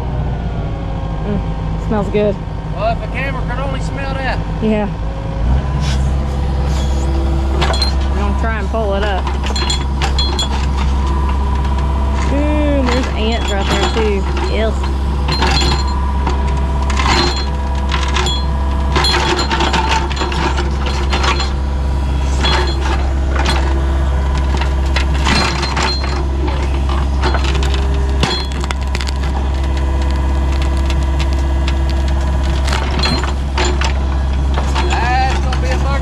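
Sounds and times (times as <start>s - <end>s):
steady engine hum: 0.0s - 36.0s
wood cracking and snapping: 27.0s - 34.6s.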